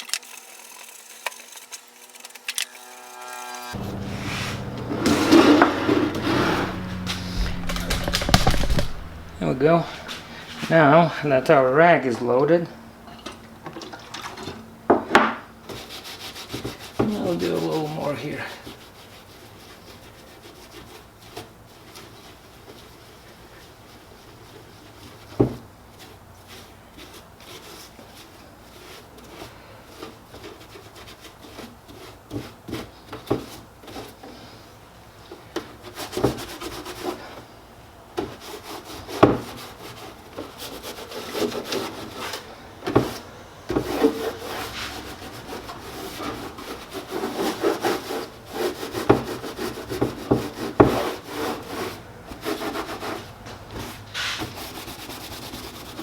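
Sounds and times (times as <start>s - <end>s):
bag knocks: 3.8s - 10.4s.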